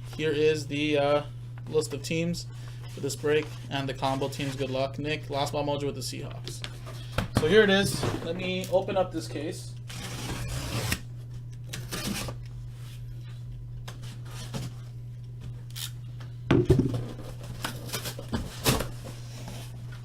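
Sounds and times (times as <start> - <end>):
cutting through tape and cardboard: 9.9 - 11.1, 11.8 - 12.4.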